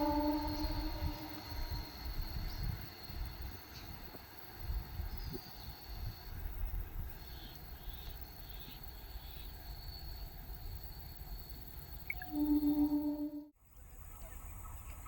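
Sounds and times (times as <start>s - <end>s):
high insect drone: 0.0s - 13.5s
faint chirps: 12.0s - 13.4s.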